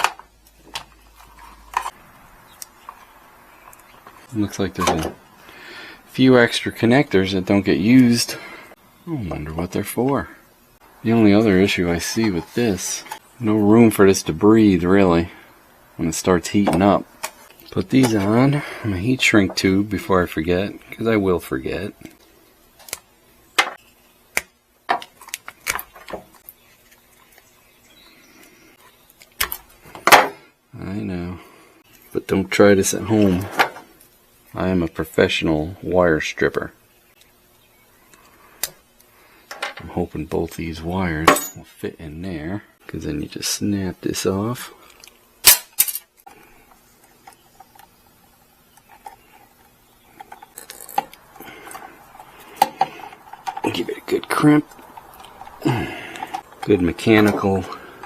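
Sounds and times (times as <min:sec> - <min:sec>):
small tools clicking and tapping: 0:48.8 - 0:57.4.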